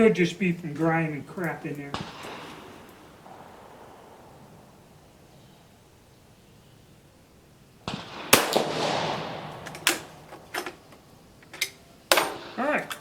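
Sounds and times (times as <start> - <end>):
rifle shot with echo: 1.9 - 6.2, 7.8 - 11.4, 12.1 - 13.0.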